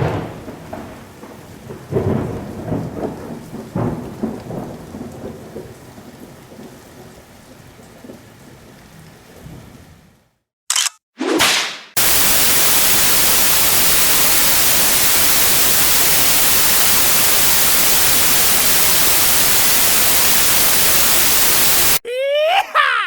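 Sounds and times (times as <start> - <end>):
whip swish: 11.2 - 11.9
white noise hiss: 12.0 - 22.0
person shouting yeehaw: 22.0 - 23.0.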